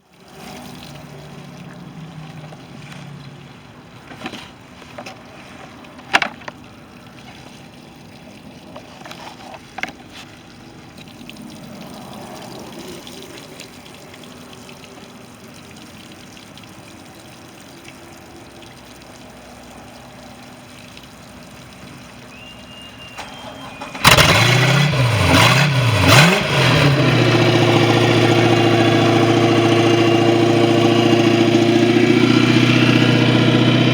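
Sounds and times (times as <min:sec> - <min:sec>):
boat engine starting and idling: 0:22.1 - 0:33.9.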